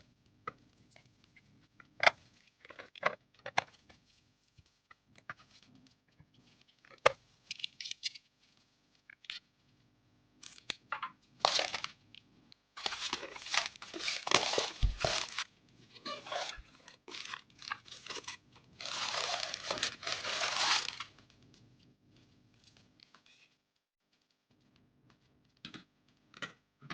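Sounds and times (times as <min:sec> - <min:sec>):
plastic film crinkling and tearing: 0:11.4 - 0:11.9, 0:12.8 - 0:21.1
continuous peeling sound: 0:12.8 - 0:21.1.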